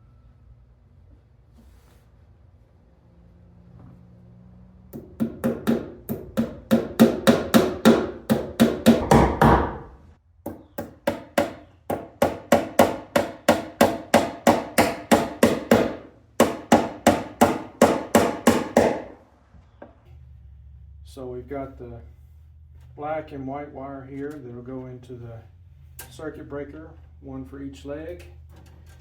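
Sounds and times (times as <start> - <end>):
hammer striking fast: 5.0 - 10.0, 10.8 - 19.2.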